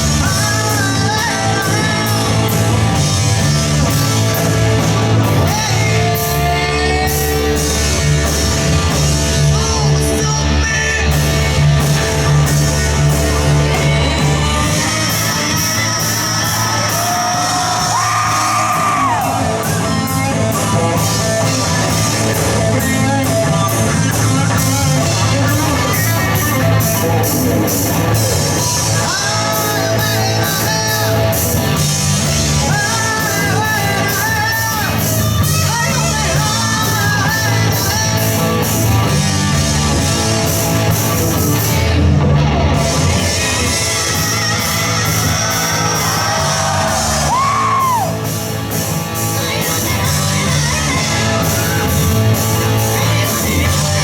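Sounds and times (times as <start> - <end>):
live rock band with singer: 0.0 - 54.0
people yelling: 16.0 - 19.8, 44.1 - 48.4.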